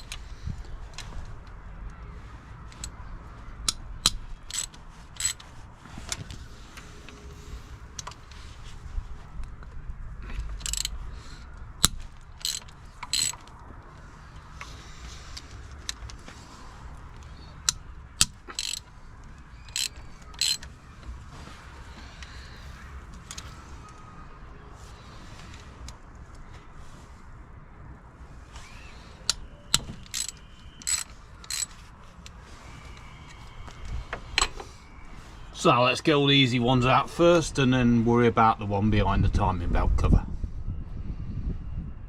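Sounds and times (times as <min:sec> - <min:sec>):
hand ratchet clicking: 0:03.7 - 0:05.5, 0:10.6 - 0:11.0, 0:11.8 - 0:13.6, 0:17.2 - 0:19.0, 0:19.6 - 0:20.7, 0:29.3 - 0:31.8
wrenches clinking on metal: 0:04.0 - 0:05.5, 0:10.6 - 0:11.0, 0:11.8 - 0:13.5, 0:17.6 - 0:18.9, 0:19.6 - 0:20.7, 0:29.7 - 0:31.9.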